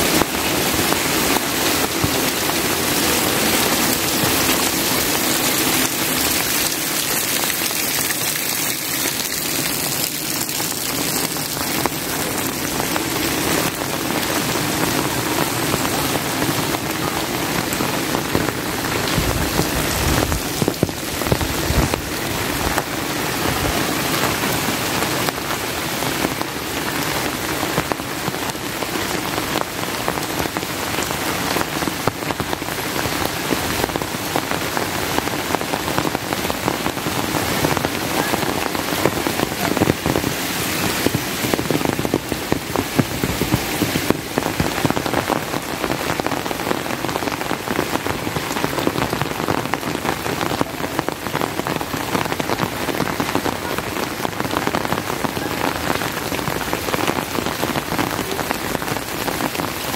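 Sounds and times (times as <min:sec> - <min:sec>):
heavy rain: 0:00.0 - 0:59.9
raindrops pattering: 0:00.0 - 0:59.9.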